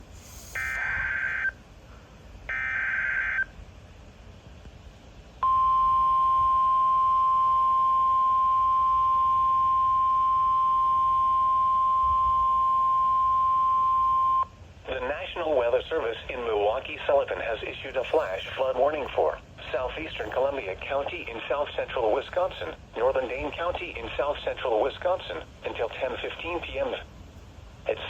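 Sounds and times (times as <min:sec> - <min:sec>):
screeching data bursts: 0:00.4 - 0:01.6, 0:02.5 - 0:03.5
steady piercing alarm tone: 0:00.5 - 0:01.6, 0:02.5 - 0:03.6, 0:05.4 - 0:14.5.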